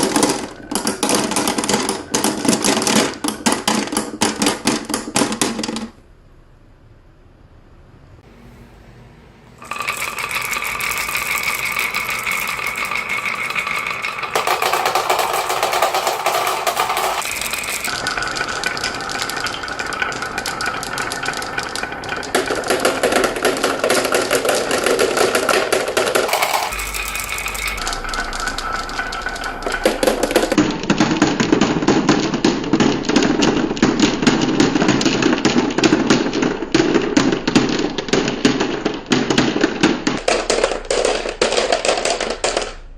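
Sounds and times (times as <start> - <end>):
marbles rolling and clattering: 0.0 - 6.0, 9.6 - 42.9.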